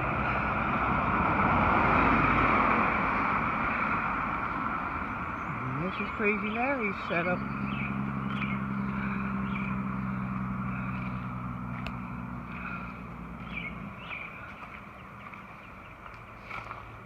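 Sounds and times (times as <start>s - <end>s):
vehicle engine hum: 0.0s - 17.0s
birds chirping: 3.6s - 17.0s.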